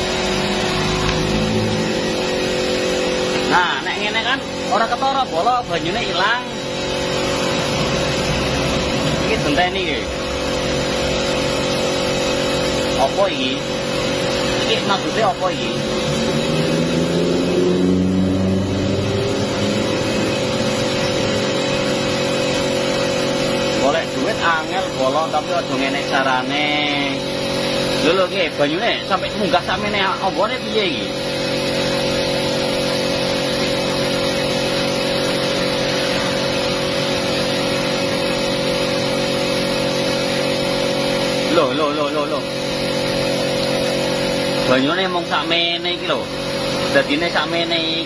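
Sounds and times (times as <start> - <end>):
engine running steadily: 0.0 - 48.0.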